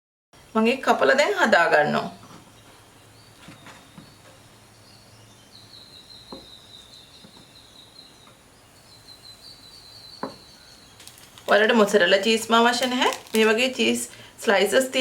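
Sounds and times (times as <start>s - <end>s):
knife knocking cutting board: 6.3s - 6.5s, 10.2s - 10.5s.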